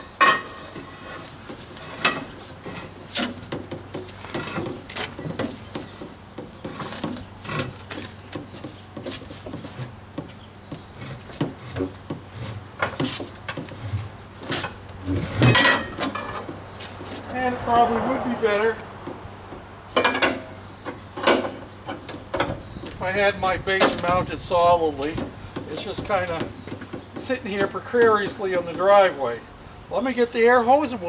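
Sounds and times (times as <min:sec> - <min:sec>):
rubber scraping against metal: 0:00.0 - 0:19.2
metal bar clanking on rim: 0:15.4 - 0:16.5.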